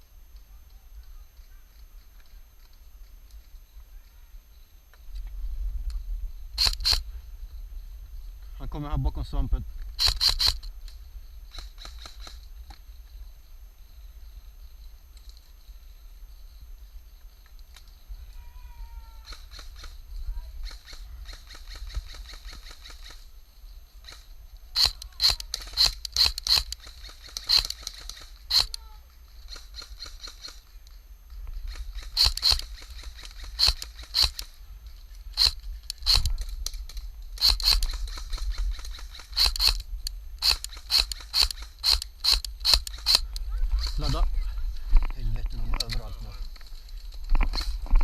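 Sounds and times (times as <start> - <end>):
low rumble of wind: 0.0 - 48.0
airsoft gun shots: 24.8 - 28.8, 32.0 - 34.5, 35.4 - 36.4, 37.4 - 38.5, 40.4 - 44.0.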